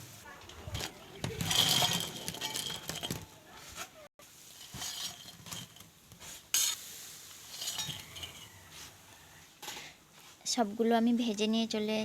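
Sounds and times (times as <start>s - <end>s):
metal spoon scraping a pan: 4.5s - 9.0s.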